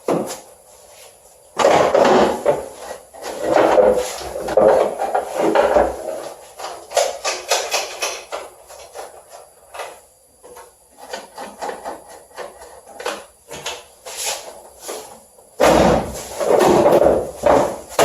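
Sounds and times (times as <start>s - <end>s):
loud rough handling noise: 1.6s - 18.0s.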